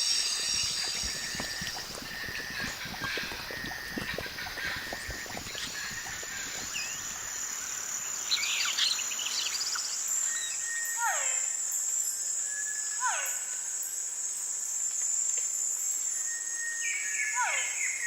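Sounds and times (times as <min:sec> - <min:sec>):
high insect drone: 0:00.0 - 0:18.0
bird calls: 0:00.4 - 0:10.5.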